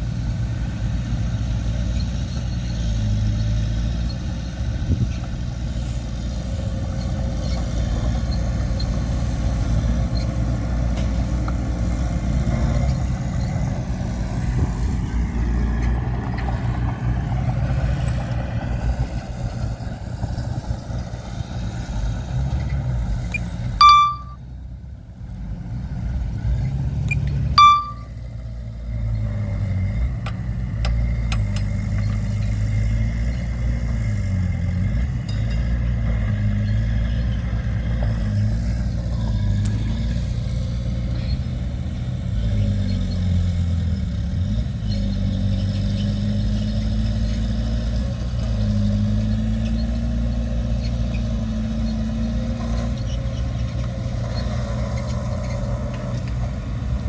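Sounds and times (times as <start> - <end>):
diesel machinery rumbling: 0.0 - 57.0
loud high beeps: 23.8 - 24.4, 27.6 - 28.1.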